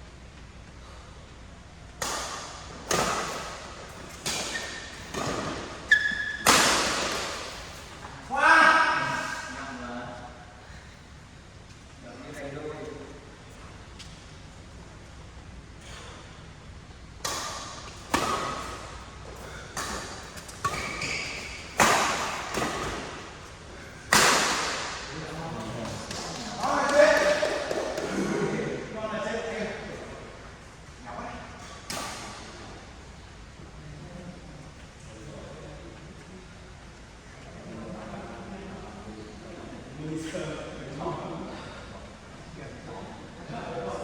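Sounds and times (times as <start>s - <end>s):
racket striking shuttlecock: 2.0s - 7.6s, 17.2s - 23.4s, 24.1s - 25.1s
shoes squeaking on court floor: 2.9s - 8.2s, 17.8s - 23.6s.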